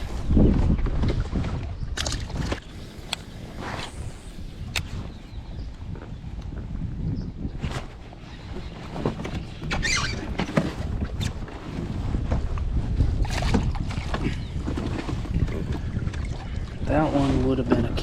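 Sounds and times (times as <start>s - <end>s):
water splashes: 0.0s - 5.3s
wind rumbling on microphone: 0.0s - 18.0s.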